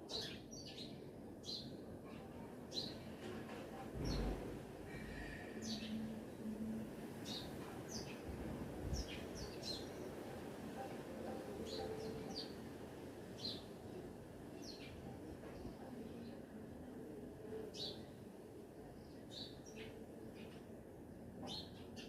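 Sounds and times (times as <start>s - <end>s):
small birds chirping: 0.1s - 3.1s, 7.2s - 10.5s, 13.3s - 14.0s.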